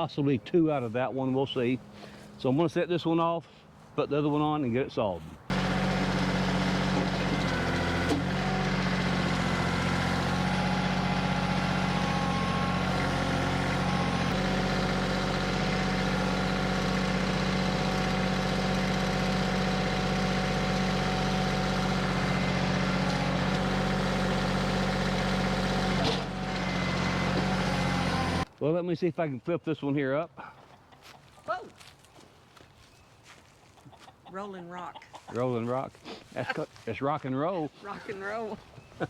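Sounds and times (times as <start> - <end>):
diesel tractor engine running: 5.4 - 28.5.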